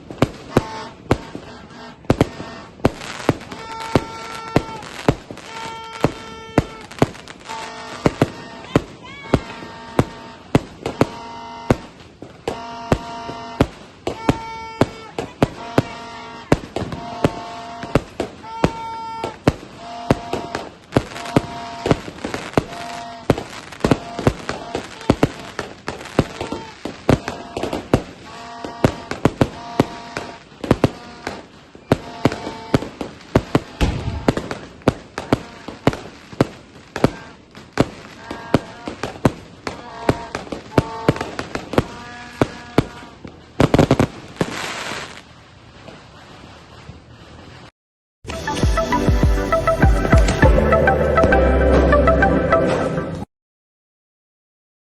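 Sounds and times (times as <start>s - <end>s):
firework shots firing: 0.0s - 45.3s
steady tones: 48.3s - 53.1s.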